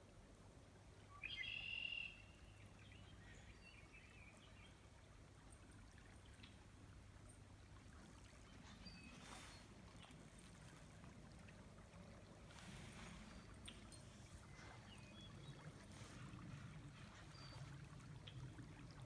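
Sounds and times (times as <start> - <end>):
faint bird chirps: 1.1 - 4.4
bird call: 1.2 - 2.4.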